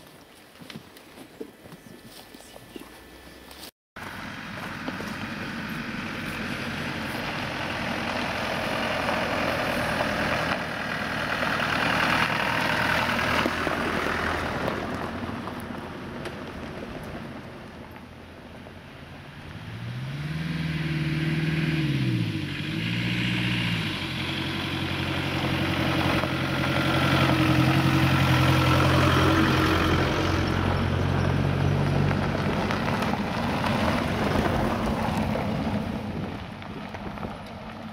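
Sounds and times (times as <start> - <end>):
vehicle engine revving: 4.0 - 15.8, 19.3 - 37.3.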